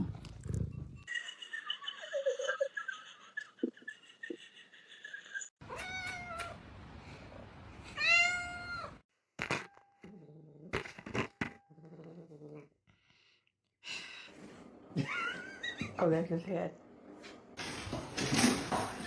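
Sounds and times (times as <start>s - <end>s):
cat meowing: 8.0s - 9.0s.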